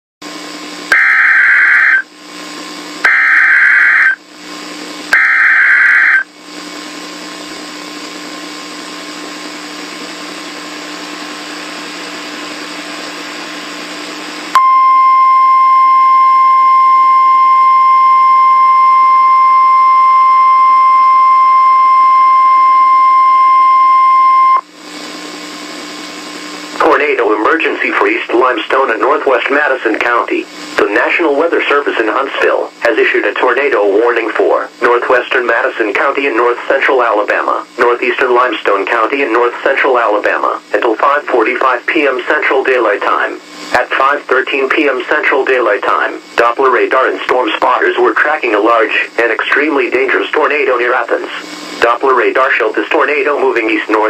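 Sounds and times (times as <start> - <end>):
screeching data bursts: 0.9 - 2.0, 3.1 - 4.2, 5.2 - 6.3
steady alert tone: 0.9 - 2.0, 3.1 - 4.2, 5.2 - 6.2
radio hiss: 0.9 - 2.1, 3.1 - 4.2, 5.1 - 6.3, 26.7 - 54.0.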